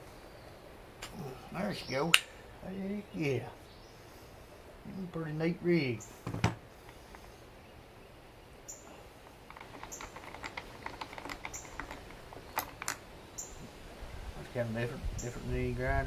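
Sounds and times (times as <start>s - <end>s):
angle grinder clicking and tapping: 9.5s - 13.0s.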